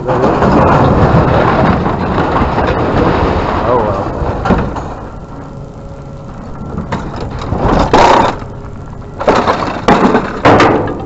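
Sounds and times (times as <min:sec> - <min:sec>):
metal scrap clattering: 0:06.8 - 0:08.5, 0:09.2 - 0:11.0.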